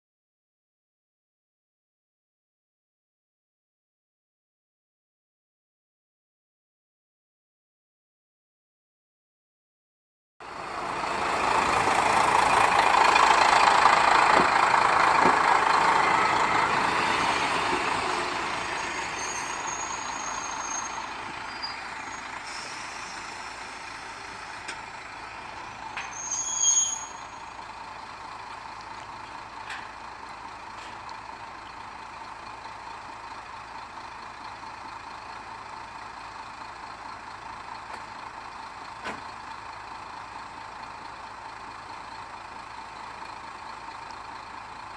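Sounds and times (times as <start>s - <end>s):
diesel railcar passing: 10.4s - 44.9s
high squeal: 16.5s - 24.4s, 25.7s - 27.7s.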